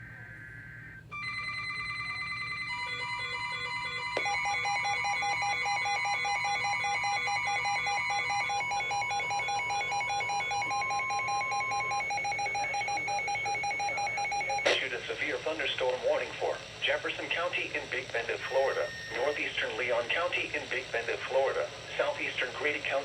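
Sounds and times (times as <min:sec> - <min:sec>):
electronic alarm tones pulsing: 0:00.5 - 0:14.8, 0:18.4 - 0:19.5.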